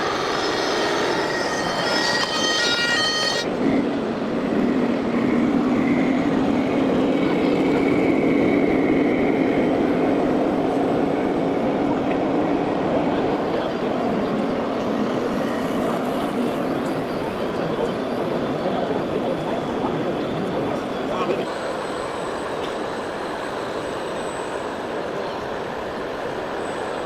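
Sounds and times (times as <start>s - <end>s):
faint high whine: 0.0s - 3.7s, 21.5s - 27.0s.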